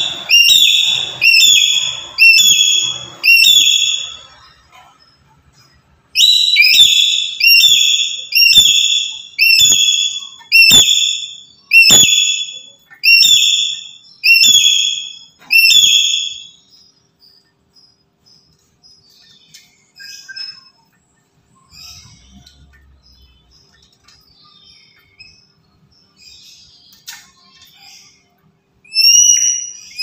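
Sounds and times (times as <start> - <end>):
parrot whistled calls: 0.0 - 4.5, 6.1 - 16.6, 28.8 - 30.0.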